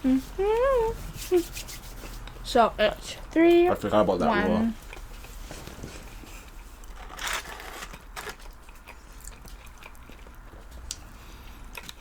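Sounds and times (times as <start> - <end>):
chewing with small clicks: 8.4 - 12.0.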